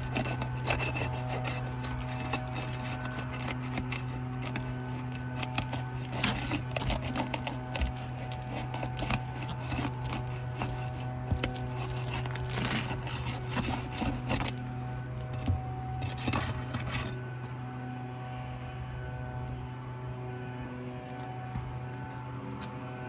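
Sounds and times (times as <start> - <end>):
pry tool scraping roof shingles: 0.0 - 17.6
steady low hum: 0.0 - 23.0.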